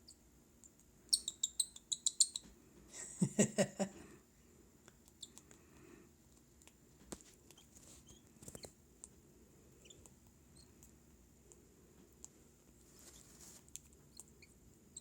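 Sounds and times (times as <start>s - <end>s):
cockatiel chicks peeping: 1.0s - 2.6s, 5.0s - 5.6s, 7.4s - 8.8s, 9.8s - 10.9s, 13.0s - 15.0s.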